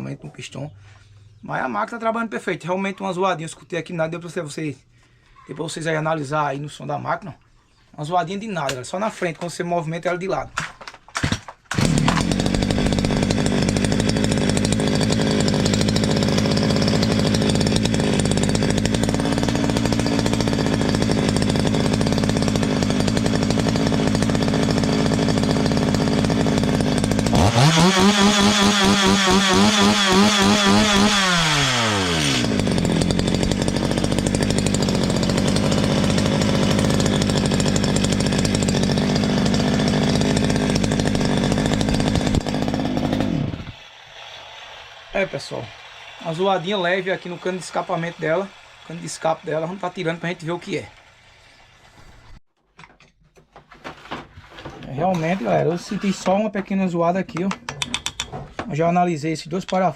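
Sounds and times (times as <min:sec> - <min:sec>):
chainsaw engine idling and revving: 0:10.8 - 0:51.2.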